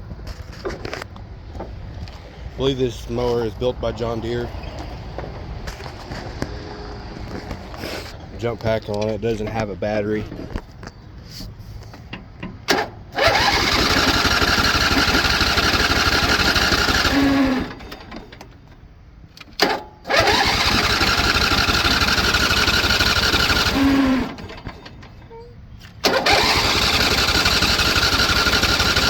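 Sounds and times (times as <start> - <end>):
electric starter cranking engine: 12.6 - 18.5, 19.6 - 25.0, 26.0 - 29.0.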